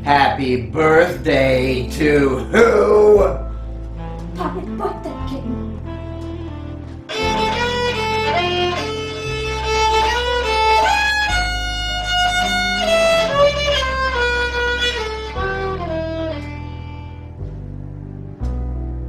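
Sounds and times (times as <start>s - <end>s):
low sustained bass notes: 0.0s - 19.0s
violin playing lively melody: 4.2s - 17.3s.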